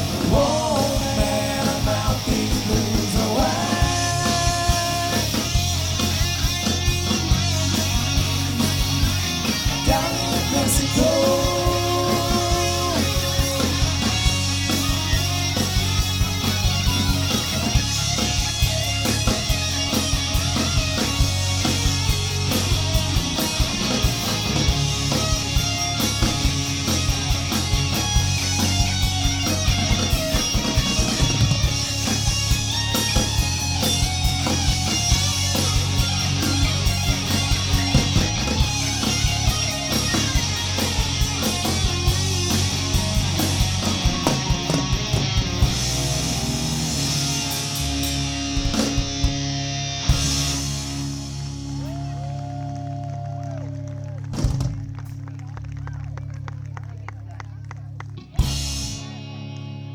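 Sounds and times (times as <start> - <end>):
steady drum beat: 0.0 - 52.2
bass guitar: 0.0 - 59.9
electric guitar: 0.0 - 59.9.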